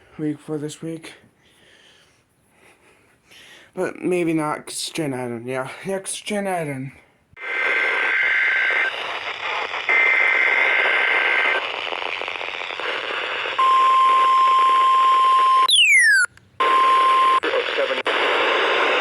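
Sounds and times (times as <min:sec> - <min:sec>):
radio static: 0:07.4 - 0:15.7, 0:16.6 - 0:19.0.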